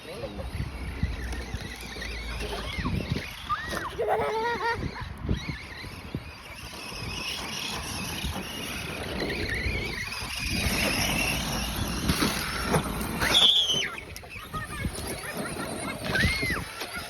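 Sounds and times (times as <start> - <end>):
remote-control car wheels rumbling: 0.0 - 17.0
short high squeal: 13.2 - 14.0.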